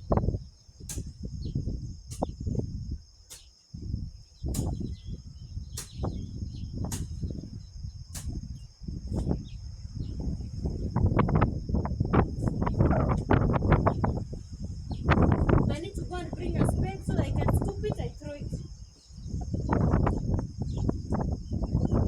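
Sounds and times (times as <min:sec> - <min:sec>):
insect trill: 0:00.0 - 0:22.0
wind buffeting microphone: 0:00.0 - 0:22.0
sharp ticks: 0:00.9 - 0:01.2, 0:02.1 - 0:02.4, 0:03.3 - 0:03.5, 0:04.6 - 0:04.8, 0:05.8 - 0:06.1, 0:06.9 - 0:07.2, 0:08.2 - 0:08.4.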